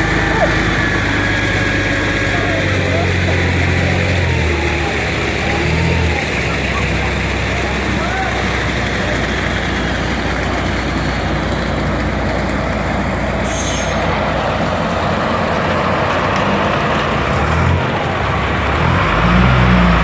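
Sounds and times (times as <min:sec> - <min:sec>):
truck diesel engine running: 0:00.0 - 0:20.0
short air hiss: 0:13.4 - 0:14.1.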